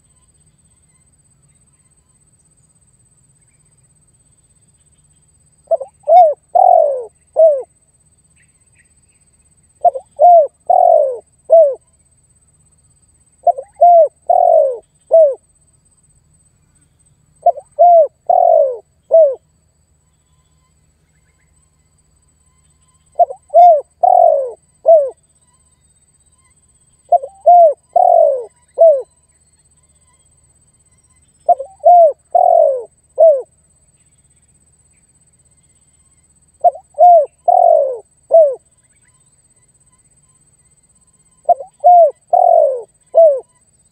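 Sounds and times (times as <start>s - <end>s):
dove cooing: 5.7s - 7.7s, 9.8s - 11.8s, 13.4s - 15.4s, 17.4s - 19.4s, 23.2s - 25.2s, 27.1s - 29.1s, 31.5s - 33.5s, 36.6s - 38.6s, 41.4s - 43.5s.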